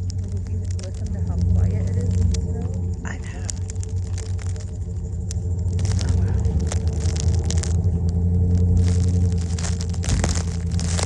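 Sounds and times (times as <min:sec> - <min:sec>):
low engine hum: 0:00.0 - 0:11.0
tyres crunching over snow: 0:00.0 - 0:11.0.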